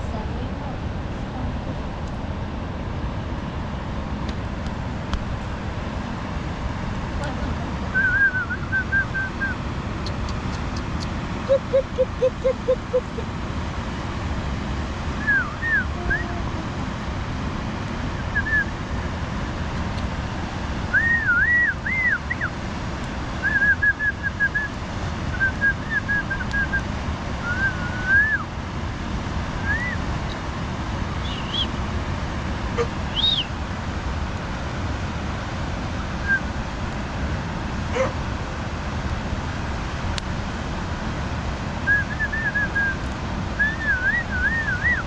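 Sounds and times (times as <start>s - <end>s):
steady rushing noise: 0.0s - 45.0s
dog whining: 37.9s - 38.1s.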